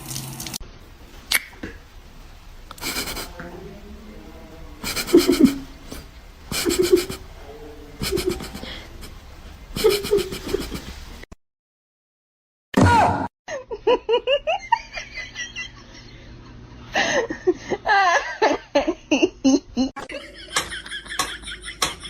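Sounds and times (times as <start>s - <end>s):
person laughing: 2.8s - 3.4s, 4.8s - 9.2s, 9.8s - 11.0s, 13.5s - 22.0s.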